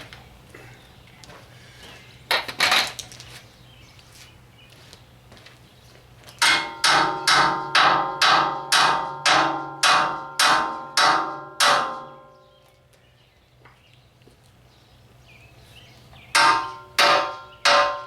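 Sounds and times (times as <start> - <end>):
hammer striking metal: 6.4 - 12.4, 16.4 - 18.0.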